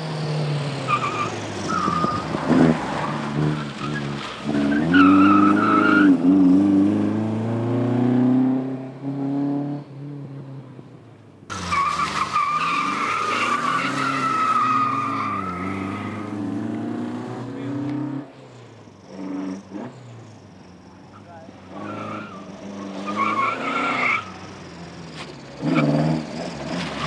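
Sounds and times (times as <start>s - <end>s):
tyres squealing: 11.5s - 16.4s
racing car engine revving: 11.5s - 18.4s.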